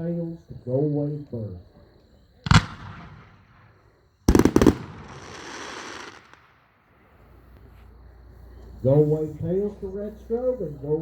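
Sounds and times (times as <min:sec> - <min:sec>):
fireworks bangs: 0:02.4 - 0:07.4
fireworks hiss: 0:02.5 - 0:07.8.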